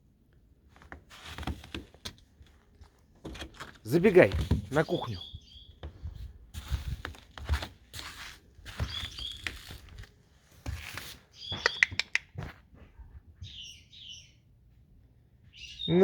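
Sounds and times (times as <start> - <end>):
footsteps crunching on snow: 6.5 - 11.7.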